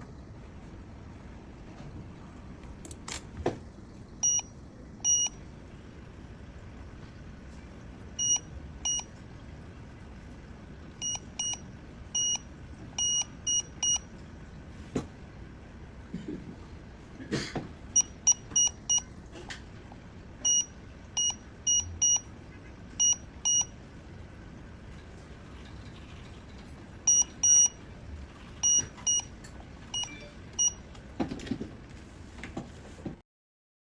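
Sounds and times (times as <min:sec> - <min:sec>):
multimeter beeping: 0:04.2 - 0:05.4, 0:08.2 - 0:09.1, 0:11.0 - 0:11.6, 0:12.2 - 0:14.0, 0:18.0 - 0:19.1, 0:20.4 - 0:22.3, 0:23.0 - 0:23.7, 0:27.1 - 0:27.8, 0:28.6 - 0:29.3, 0:29.9 - 0:30.8.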